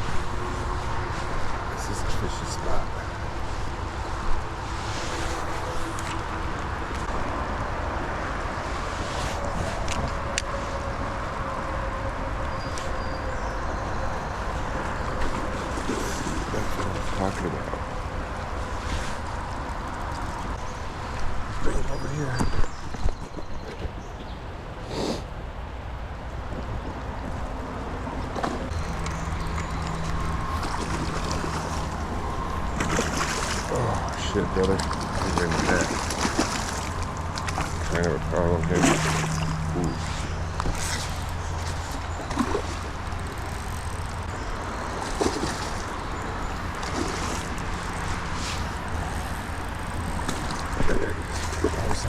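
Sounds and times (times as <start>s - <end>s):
wind rumble on microphone: 25.4s - 52.0s
river water rushing: 28.7s - 52.0s.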